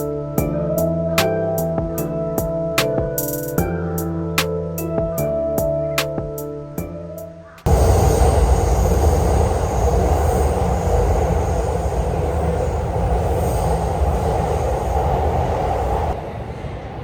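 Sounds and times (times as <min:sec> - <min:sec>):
train rumbling: 0:07.7 - 0:17.0.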